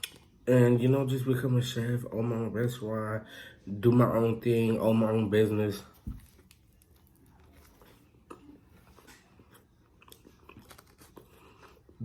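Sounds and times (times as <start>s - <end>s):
chewing and biting food: 6.1s - 12.0s.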